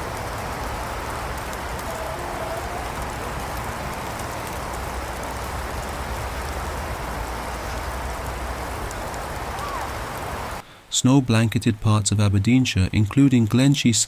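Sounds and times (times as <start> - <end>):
rain hissing: 0.0 - 11.0.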